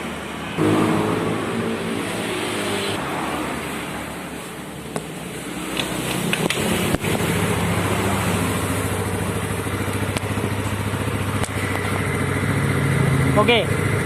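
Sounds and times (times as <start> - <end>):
scooter engine idling: 4.9 - 14.0.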